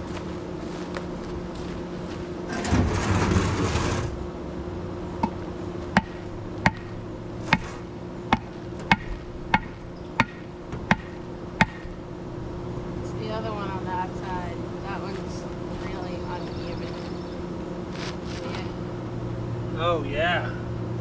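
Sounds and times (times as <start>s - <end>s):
brick scraping: 2.5s - 4.2s.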